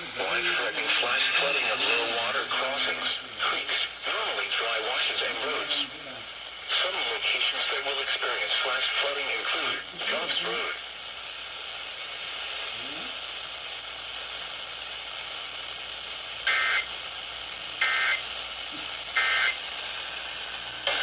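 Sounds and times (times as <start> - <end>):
digital data tone bursts: 0.0 - 5.9, 16.5 - 16.9, 17.8 - 18.3, 19.1 - 19.6
radio static hiss: 0.0 - 21.0.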